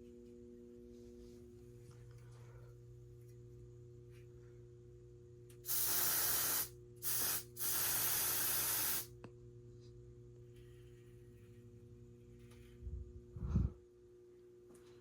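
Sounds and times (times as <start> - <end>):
steady low hum: 0.0 - 15.0
aerosol spray hissing: 5.7 - 9.1.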